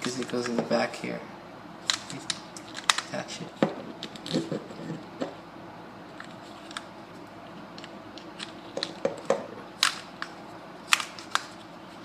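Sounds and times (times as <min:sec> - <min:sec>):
plastic parts clicking and tapping: 0:07.8 - 0:10.3.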